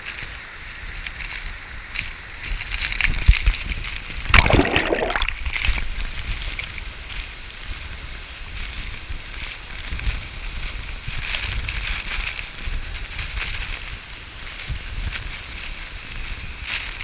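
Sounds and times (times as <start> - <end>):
loud water splash: 4.2 - 6.2
river water splashing: 4.3 - 6.6.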